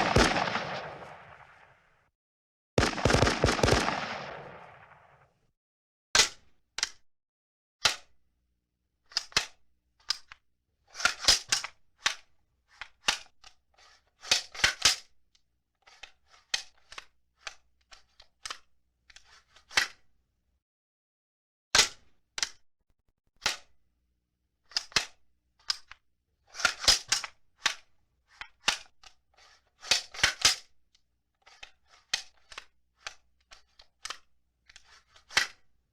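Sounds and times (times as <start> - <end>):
machine gun fire: 0.0 - 1.6, 2.8 - 5.2.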